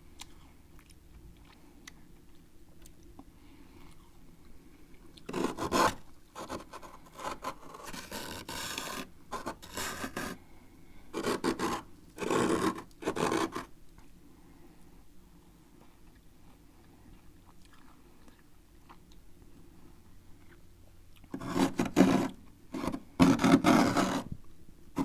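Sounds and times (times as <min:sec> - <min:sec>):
spoon scraping frost: 0:21.3 - 0:24.3.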